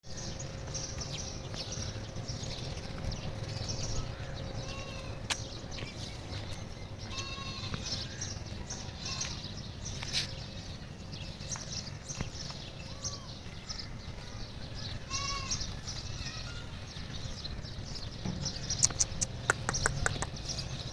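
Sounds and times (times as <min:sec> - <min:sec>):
livestock bleating: 0:07.1 - 0:08.0, 0:15.1 - 0:15.6
scattered clicks: 0:18.8 - 0:20.4.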